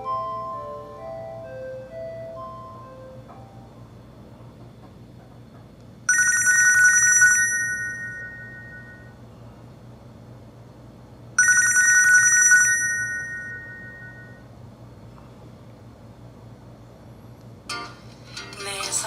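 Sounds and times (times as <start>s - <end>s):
phone ringtone trill: 6.1s - 9.2s, 11.4s - 14.4s.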